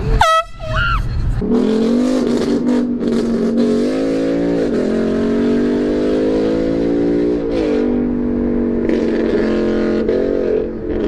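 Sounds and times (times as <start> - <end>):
air horn blast: 0.2 - 0.9.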